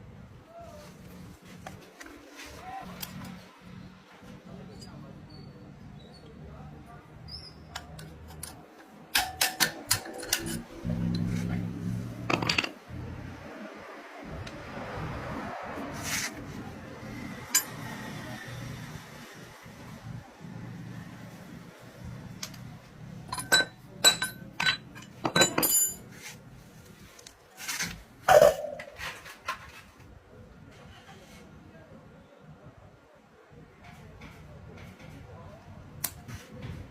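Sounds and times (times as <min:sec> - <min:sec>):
sharp metal taps and clicks: 0:07.7 - 0:10.5
metal tools clinking: 0:07.7 - 0:11.3, 0:12.2 - 0:12.8, 0:17.4 - 0:17.8, 0:23.2 - 0:26.2
metal scraping: 0:08.0 - 0:13.1.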